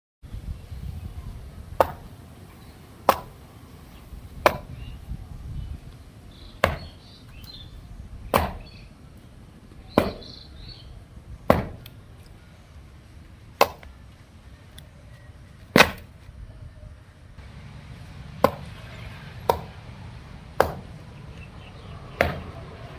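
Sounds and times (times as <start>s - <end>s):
sharp chopping knocks: 1.8s - 2.1s, 3.1s - 3.4s, 4.4s - 4.8s, 6.6s - 7.0s, 8.3s - 8.7s, 10.0s - 10.4s, 11.5s - 11.9s, 13.6s - 13.9s, 15.8s - 16.1s, 18.4s - 18.8s, 19.5s - 19.8s, 20.6s - 21.0s, 22.1s - 22.6s.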